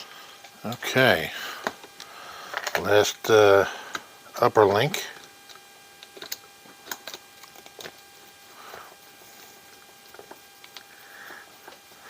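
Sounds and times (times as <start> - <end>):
plastic and metal parts handled: 1.6 - 2.9.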